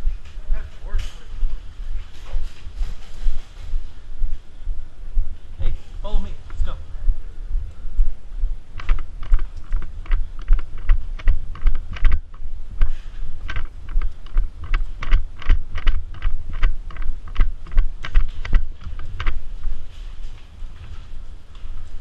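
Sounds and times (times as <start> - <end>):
footsteps crunching on rough ground: 0.2 - 4.4, 8.7 - 22.0
camera jostling thuds: 8.8 - 19.4.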